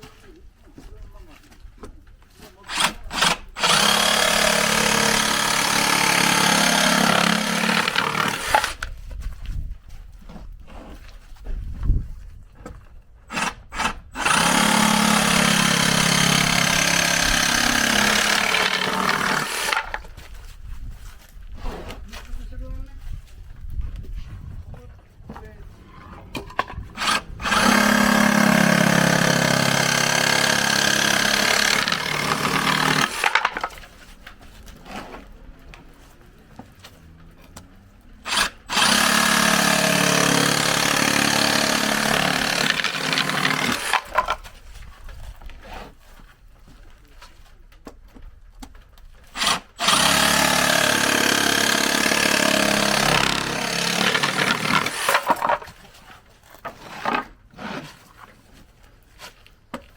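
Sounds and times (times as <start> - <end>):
reciprocating saw cutting plywood: 2.7 - 8.9, 13.3 - 20.1, 26.9 - 33.8, 37.5 - 44.4, 49.3 - 55.7.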